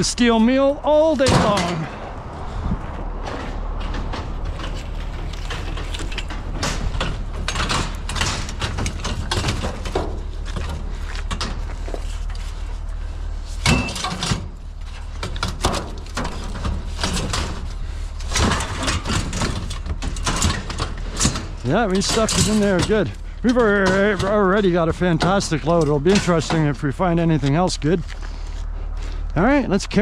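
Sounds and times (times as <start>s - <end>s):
low hum: 0.0s - 30.0s
scrap metal clanking and scraping: 1.2s - 29.3s
ringing metal clang: 13.6s - 14.2s.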